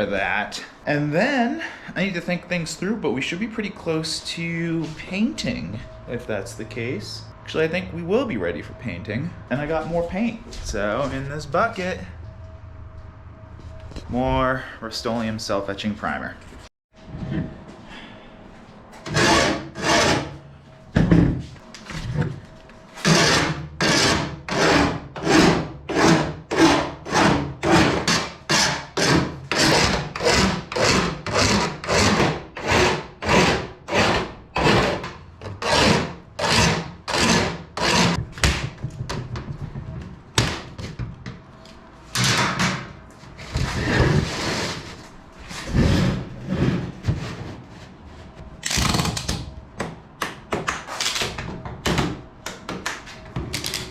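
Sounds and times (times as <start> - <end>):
hand file scraping metal: 19.0 - 20.4, 23.0 - 38.2.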